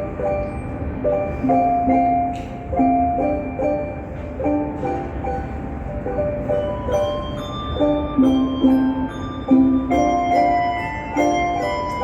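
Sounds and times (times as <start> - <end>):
handbell choir playing: 6.4 - 12.0.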